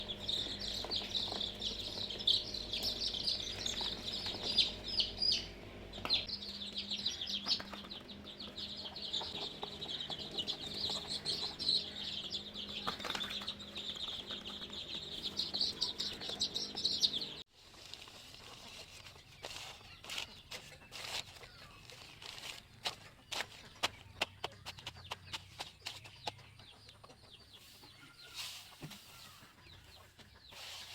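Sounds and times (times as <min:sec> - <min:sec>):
low steady hum: 0:00.0 - 0:17.5
chicks peeping: 0:00.0 - 0:30.9.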